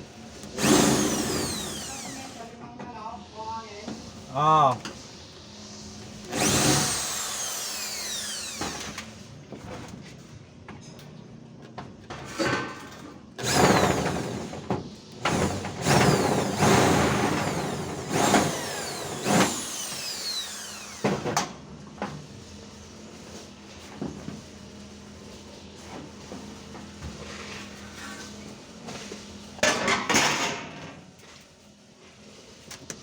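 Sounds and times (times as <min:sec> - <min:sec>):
electric power tool whine: 0:00.1 - 0:02.7, 0:03.8 - 0:09.3, 0:13.4 - 0:21.6.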